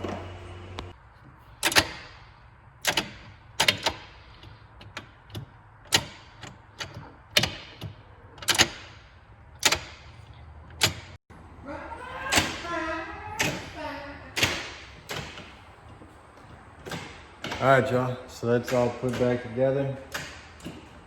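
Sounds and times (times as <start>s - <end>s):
hand tools clicking and knocking: 2.8s - 11.2s, 14.4s - 21.0s.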